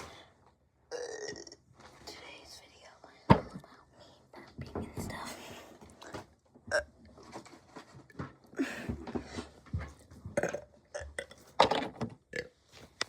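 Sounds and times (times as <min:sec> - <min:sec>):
child burping: 0:00.9 - 0:01.6.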